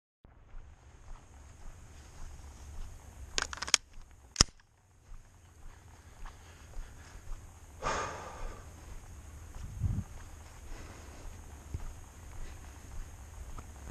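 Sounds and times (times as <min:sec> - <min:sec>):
rustle: 0:00.3 - 0:13.9
gun sharp snap: 0:03.4 - 0:04.6
gun metallic clicks and rattles: 0:03.4 - 0:04.7.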